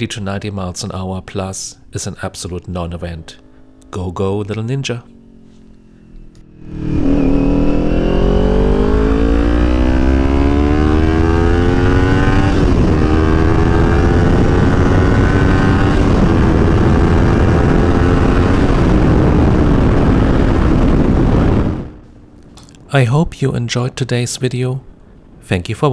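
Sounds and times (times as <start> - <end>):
motorcycle engine accelerating: 3.3 - 22.3
wind noise: 6.6 - 22.1.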